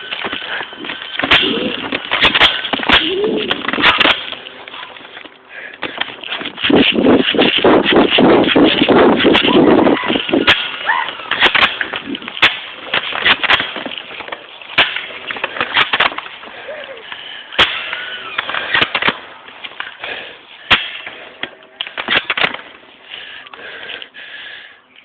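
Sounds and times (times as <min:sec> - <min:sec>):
airsoft gun shots: 0:17.6 - 0:18.0.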